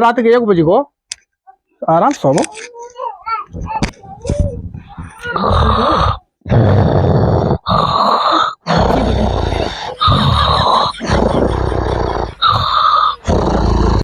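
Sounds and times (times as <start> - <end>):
man snoring loudly: 5.2 - 14.0.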